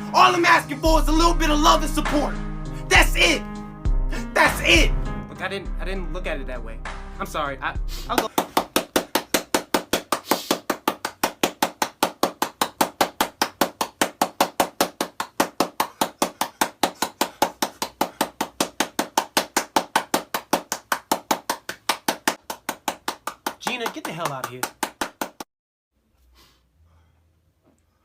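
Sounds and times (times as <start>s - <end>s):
fast even sharp knocks: 8.2s - 25.4s.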